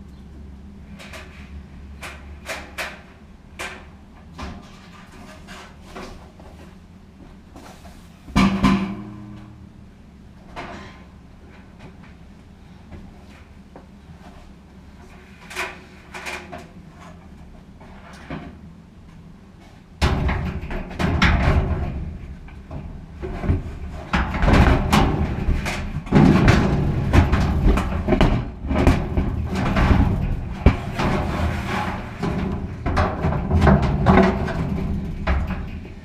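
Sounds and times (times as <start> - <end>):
sheet metal knocking and scraping: 8.3 - 9.6, 20.0 - 36.0.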